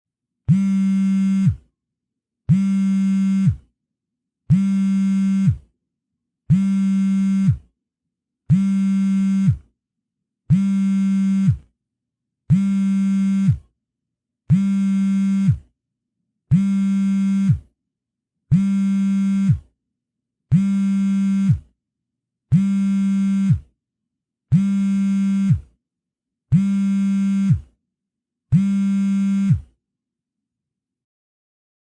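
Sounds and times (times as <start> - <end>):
mobile phone vibrating: 0.5 - 1.7, 2.5 - 3.7, 4.5 - 5.7, 6.5 - 7.7, 8.5 - 9.7, 10.5 - 11.7, 12.5 - 13.7, 14.5 - 15.7, 16.5 - 17.7, 18.5 - 19.8, 20.5 - 21.8, 22.5 - 23.8, 24.5 - 25.8, 26.5 - 27.8, 28.5 - 29.8.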